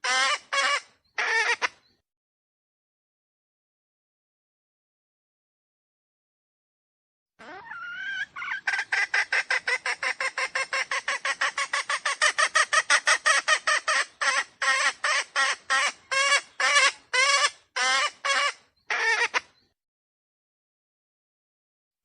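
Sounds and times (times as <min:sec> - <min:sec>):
junglefowl clucking calls: 0:00.0 - 0:01.8, 0:07.5 - 0:19.5.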